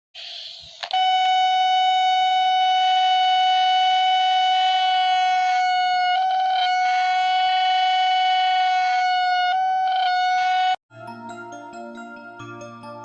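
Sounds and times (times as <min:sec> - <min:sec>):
click: 0:00.7 - 0:01.0.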